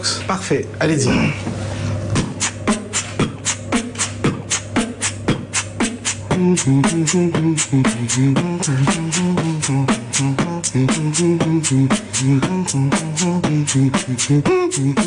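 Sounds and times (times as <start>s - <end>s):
hummed bass line: 0.9s - 15.0s
person beatboxing: 2.1s - 15.0s.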